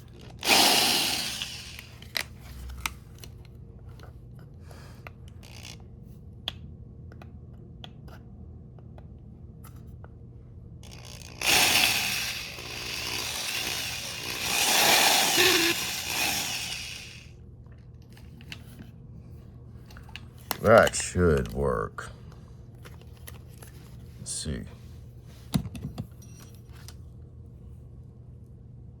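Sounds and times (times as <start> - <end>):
power drill boring plastic: 0.3 - 2.2, 10.8 - 17.3.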